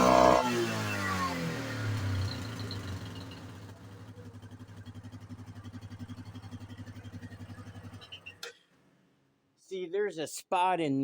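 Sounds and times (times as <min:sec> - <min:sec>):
quad bike engine idling: 0:00.0 - 0:08.7.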